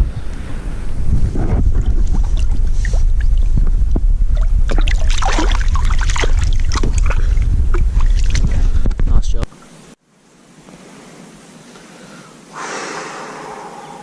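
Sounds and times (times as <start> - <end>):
wind buffeting microphone: 0.0 - 9.5.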